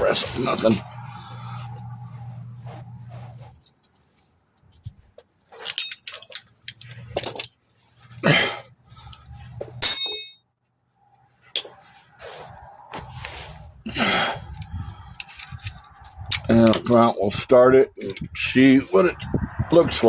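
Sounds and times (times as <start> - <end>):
metal tools clinking: 5.5 - 8.2, 8.8 - 10.5.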